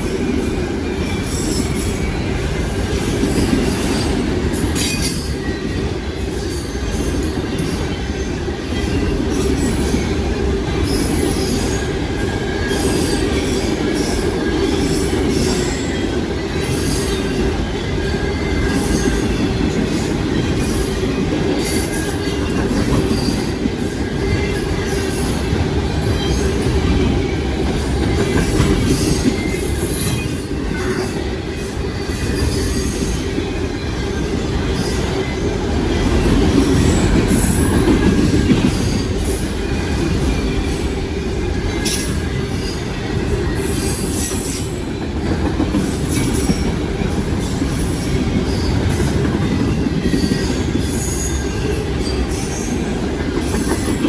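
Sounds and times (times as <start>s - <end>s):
freight train rumble: 0.0s - 54.0s
high wheel squeals: 45.8s - 54.0s.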